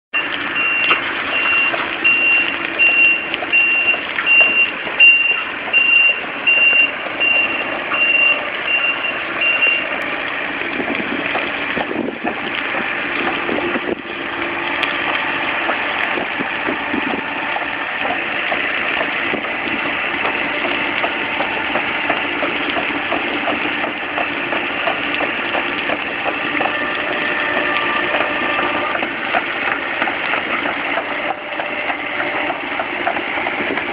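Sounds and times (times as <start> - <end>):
high warning beep: 0.2 - 9.9
excavator running on tracks: 0.2 - 33.9.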